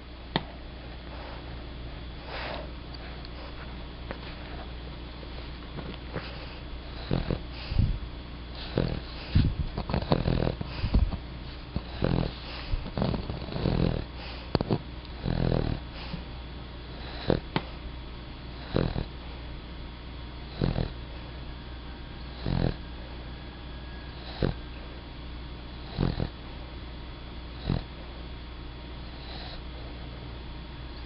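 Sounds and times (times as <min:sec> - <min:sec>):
pet snoring: 0:05.9 - 0:16.2, 0:16.9 - 0:17.6, 0:18.5 - 0:19.2, 0:20.4 - 0:21.1, 0:22.2 - 0:22.9, 0:24.1 - 0:24.8, 0:25.7 - 0:26.5, 0:27.5 - 0:28.2, 0:29.0 - 0:30.0.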